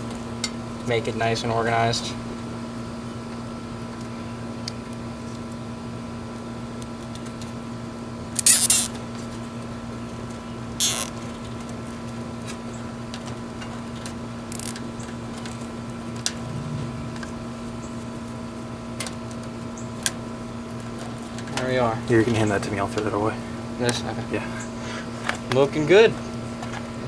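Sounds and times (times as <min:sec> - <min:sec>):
steady hum: 0:00.0 - 0:27.0
zip ties rasping: 0:08.4 - 0:08.9.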